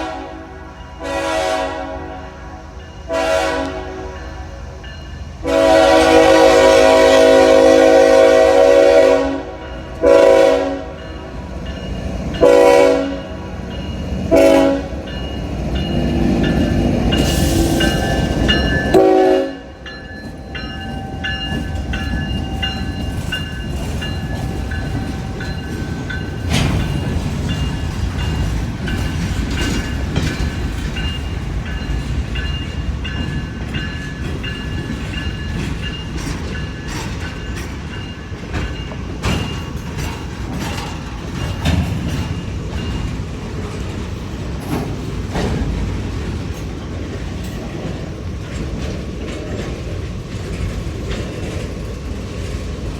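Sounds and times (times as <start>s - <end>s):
train air horn: 0.0s - 4.7s, 5.4s - 11.1s, 12.4s - 13.5s, 14.3s - 15.1s, 18.9s - 19.8s
train wheels rumbling on rail: 0.0s - 52.9s
rail joint clicks: 9.6s - 52.9s.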